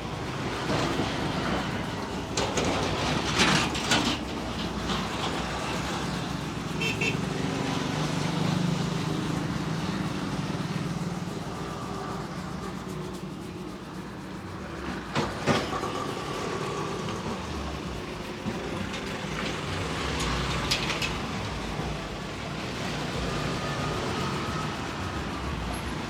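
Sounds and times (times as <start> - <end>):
engine drone: 0.0 - 26.0
traffic passing: 0.0 - 26.0
car horn toot: 6.8 - 7.2.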